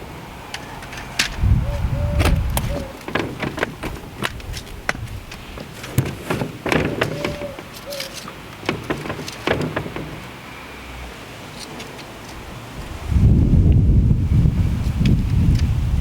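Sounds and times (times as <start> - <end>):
short squeaks: 0.6 - 10.3.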